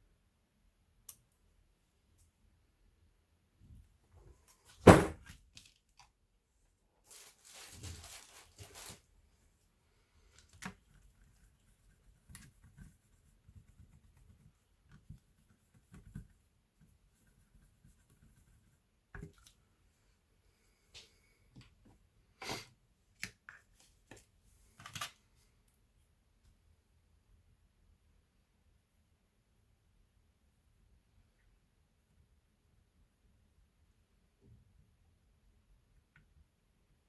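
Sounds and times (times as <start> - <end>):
sharp knock: 4.8 - 5.2
rustling scrape: 7.0 - 9.1.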